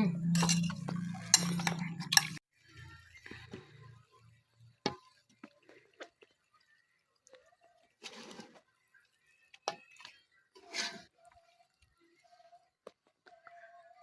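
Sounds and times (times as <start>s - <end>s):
cutlery clinking on plates: 0.2s - 2.4s.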